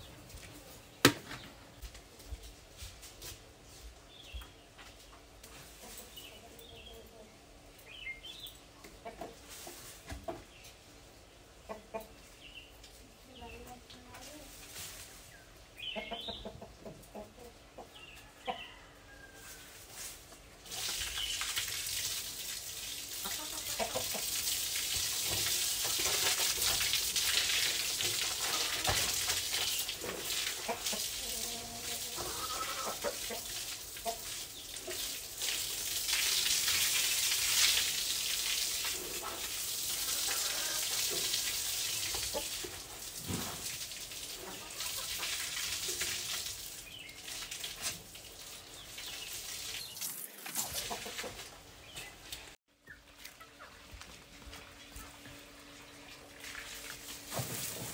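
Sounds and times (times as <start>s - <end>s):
chickens clucking: 4.3s - 14.5s, 15.3s - 19.0s, 23.2s - 24.6s, 28.1s - 35.1s, 38.8s - 41.4s, 42.0s - 43.6s, 44.4s - 45.4s, 49.8s - 57.9s.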